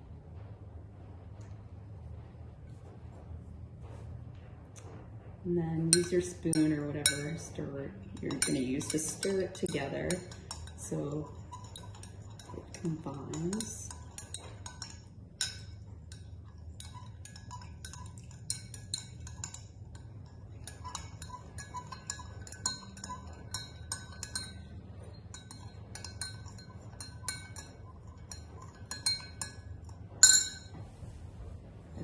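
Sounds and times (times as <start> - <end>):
metal spoon clinking in cup: 5.9 - 30.8.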